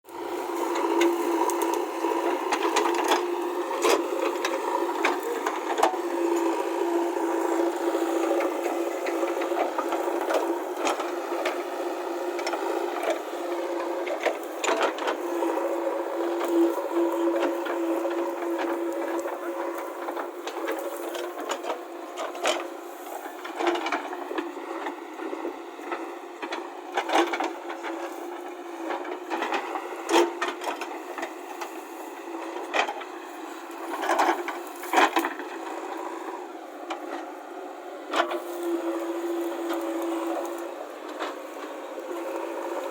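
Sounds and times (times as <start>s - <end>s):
diesel engine running: 0.1s - 42.9s
knocks and clatter in gravel: 12.2s - 36.1s.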